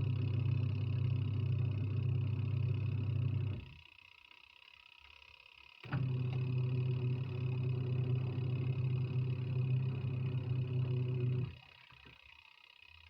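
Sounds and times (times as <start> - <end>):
washing machine motor humming: 0.0 - 3.9, 5.8 - 12.2.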